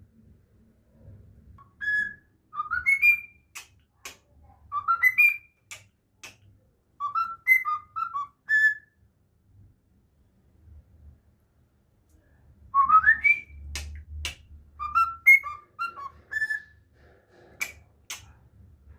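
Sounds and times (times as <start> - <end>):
cockatiel whistling: 1.6 - 3.7, 4.7 - 5.8, 7.0 - 8.9, 12.8 - 13.8, 14.8 - 16.8.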